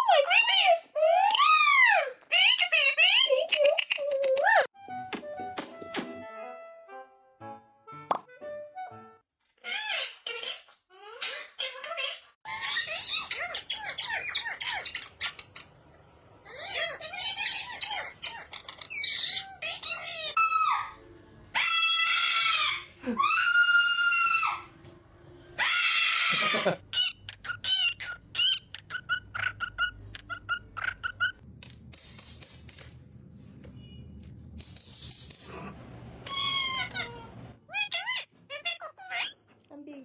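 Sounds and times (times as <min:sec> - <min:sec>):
parrot screeching and squawking: 0:09.6 - 0:15.7, 0:16.4 - 0:24.7, 0:25.6 - 0:31.4, 0:35.4 - 0:39.4
parrot warbling calls: 0:36.2 - 0:39.4.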